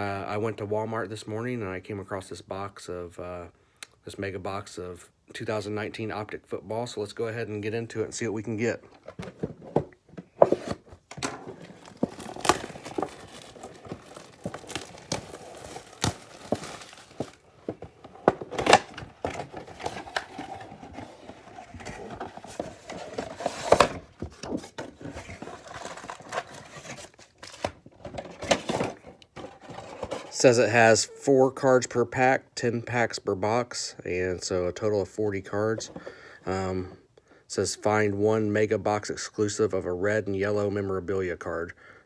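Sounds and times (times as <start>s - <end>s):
packaging crinkling and tearing: 10.4s - 30.4s.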